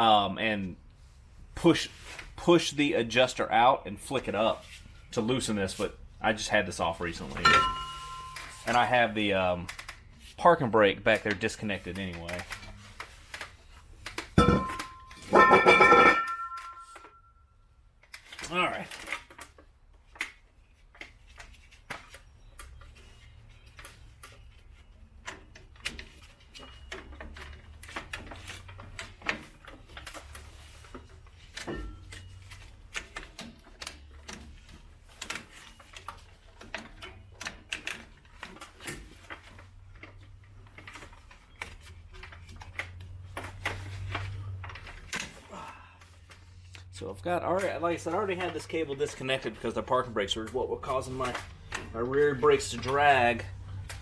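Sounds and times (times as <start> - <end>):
low steady hum: 7.4 - 8.8, 14.4 - 17.5
tool clicks and clinks on metal: 7.4 - 8.8, 14.4 - 17.3.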